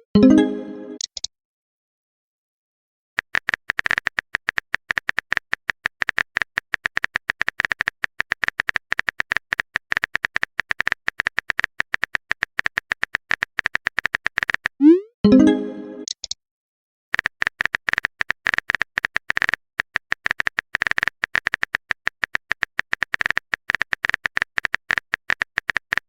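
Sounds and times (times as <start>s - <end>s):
phone keyboard typing clicks: 3.2s - 14.8s, 17.2s - 26.0s.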